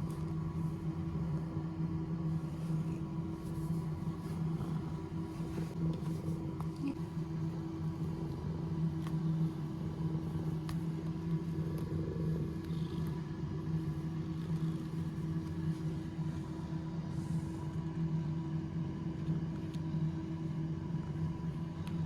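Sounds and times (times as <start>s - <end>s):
low mechanical hum: 0.0s - 22.0s.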